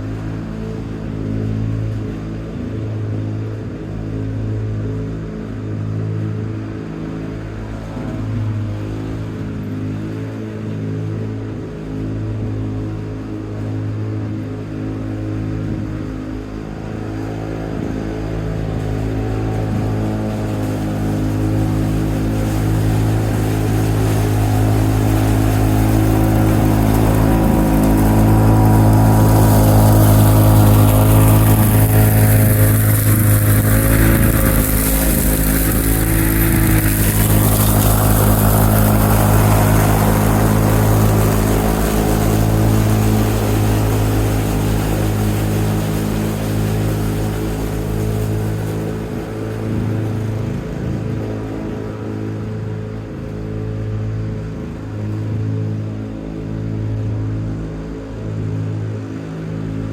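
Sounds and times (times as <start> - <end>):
lawn mower engine running: 0.0 - 59.9
rushing noise: 17.0 - 51.9.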